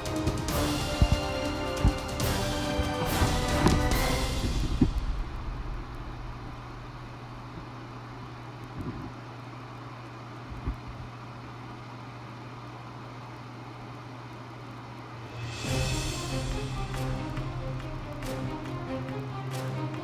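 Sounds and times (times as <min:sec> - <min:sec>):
music: 0:00.0 - 0:05.6, 0:15.2 - 0:20.0
steady low hum: 0:00.0 - 0:20.0.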